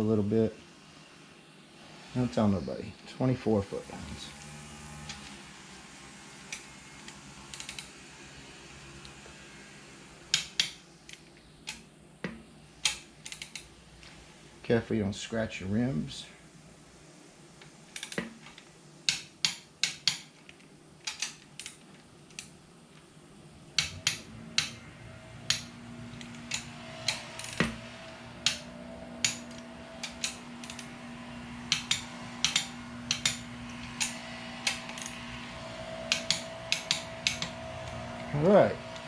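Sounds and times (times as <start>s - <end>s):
steady low hum: 0.0s - 39.0s
torque wrench ratcheting clicks: 6.5s - 7.9s, 12.8s - 13.7s, 18.0s - 18.2s, 25.5s - 27.8s, 28.4s - 30.9s, 31.7s - 35.2s, 36.1s - 38.0s.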